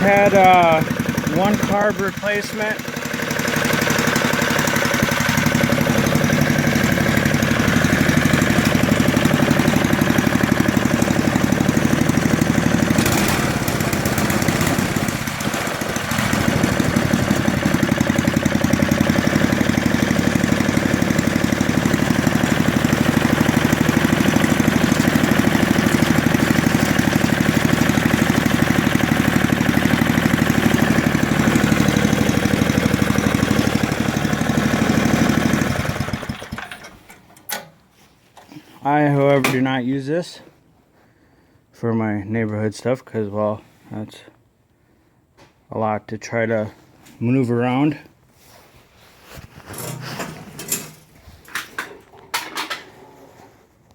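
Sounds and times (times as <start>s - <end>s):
snow blower engine running: 0.0s - 37.2s, 49.7s - 51.7s.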